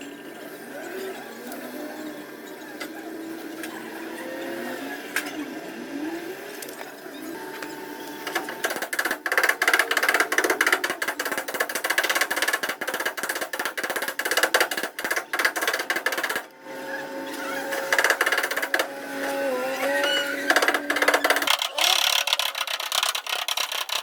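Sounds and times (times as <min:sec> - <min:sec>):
hammer tapping sheet metal: 0:08.3 - 0:16.5, 0:20.5 - 0:21.5.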